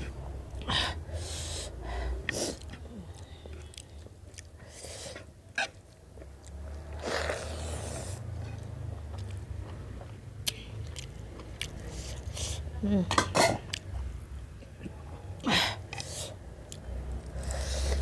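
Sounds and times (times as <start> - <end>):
chewing and biting food: 5.8 - 12.4.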